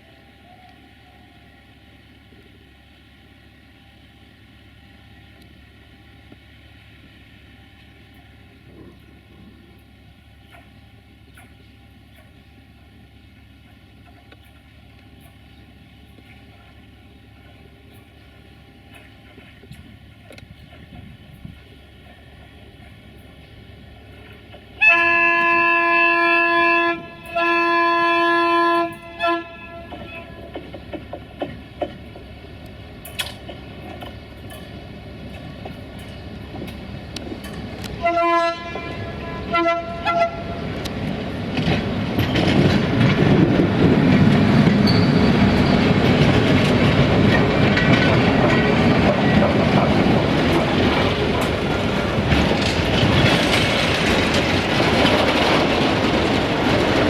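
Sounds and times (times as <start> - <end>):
train passing: 0.0 - 57.0
wheels clacking on rails: 7.7 - 57.0
train horn blasts: 24.8 - 30.5, 37.9 - 40.7.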